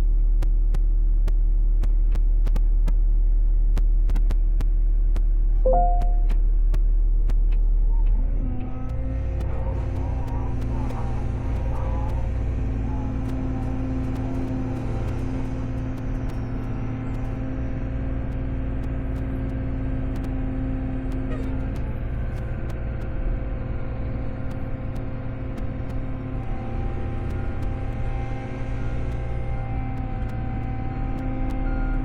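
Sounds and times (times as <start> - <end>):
steady hum: 0.0 - 32.0
excavator diesel engine: 7.7 - 32.0.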